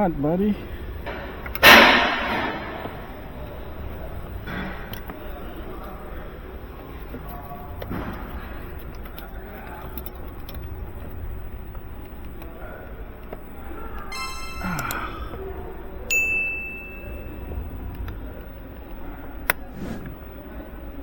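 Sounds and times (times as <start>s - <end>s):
short bright tone: 14.1s - 15.4s
high clear ding: 14.1s - 17.4s.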